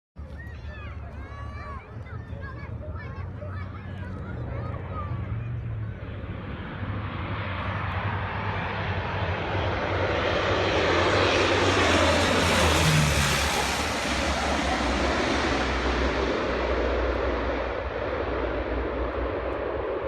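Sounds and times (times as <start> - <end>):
turboprop aircraft passing low: 0.6 - 20.0.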